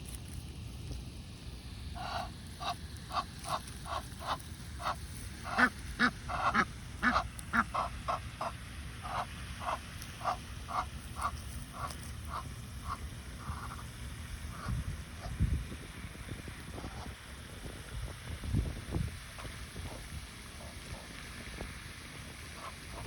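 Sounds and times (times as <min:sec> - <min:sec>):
goose honking: 0:02.0 - 0:13.8.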